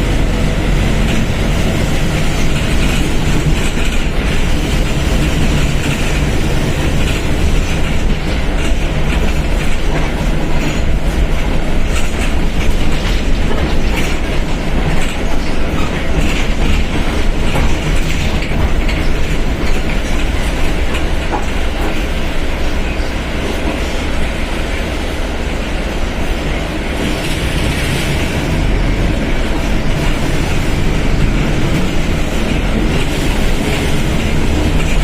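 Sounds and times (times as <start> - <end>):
bus diesel engine rumbling: 0.0 - 35.0
light rattles and clicks: 1.0 - 23.9.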